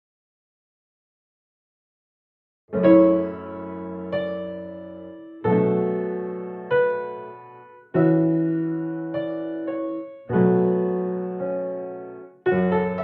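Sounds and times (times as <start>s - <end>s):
soft piano music: 2.7s - 13.0s.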